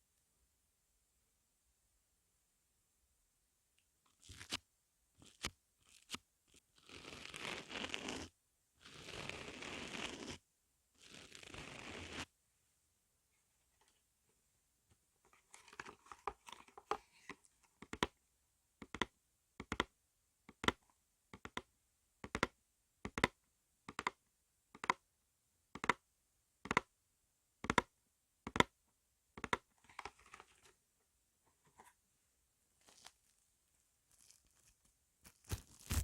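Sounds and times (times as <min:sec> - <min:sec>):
crinkly rustling: 0:32.8 - 0:36.0.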